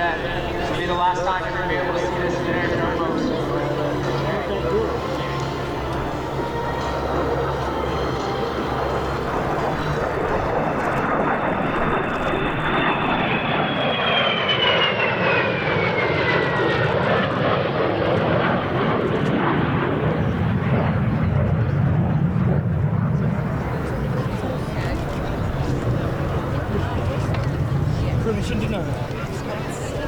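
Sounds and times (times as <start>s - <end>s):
jet passing with falling whine: 0.0s - 21.1s.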